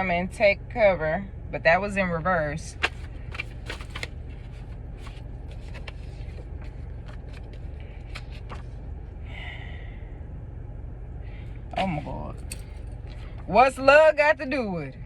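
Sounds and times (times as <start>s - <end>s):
steady low hum: 0.0s - 15.0s
cards being handled: 2.7s - 8.8s.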